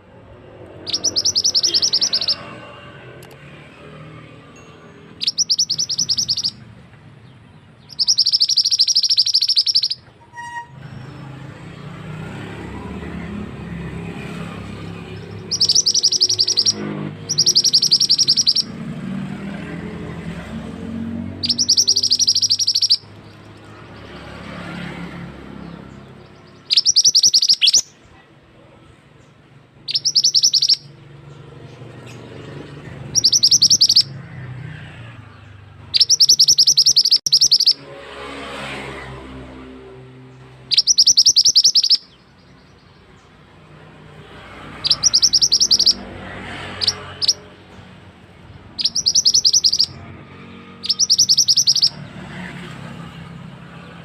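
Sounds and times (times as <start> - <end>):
bird ticking trill: 0.4 - 6.8, 7.7 - 10.7, 12.4 - 19.0, 20.6 - 28.0, 29.8 - 34.7, 35.3 - 37.8, 40.6 - 43.3, 44.6 - 47.5, 48.4 - 52.2.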